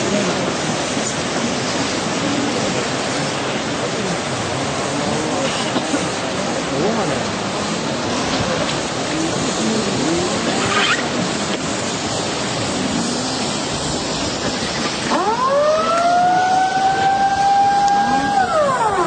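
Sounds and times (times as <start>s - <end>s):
steady rushing noise: 0.0s - 19.0s
siren wailing: 15.1s - 19.0s.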